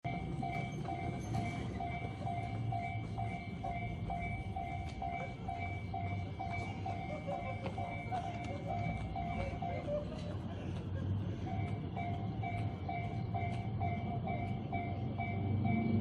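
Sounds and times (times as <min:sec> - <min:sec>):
level-crossing electronic bell: 0:00.0 - 0:10.5, 0:11.1 - 0:16.0.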